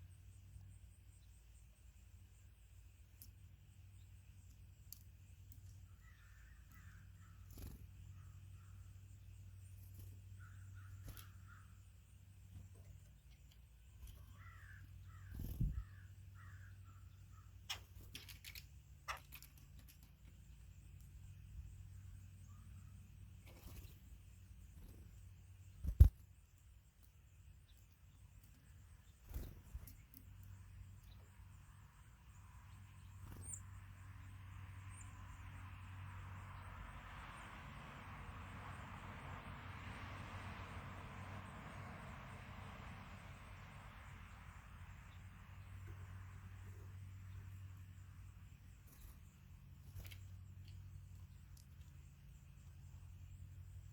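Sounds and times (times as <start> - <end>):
harsh bird calls: 14.0 - 18.0.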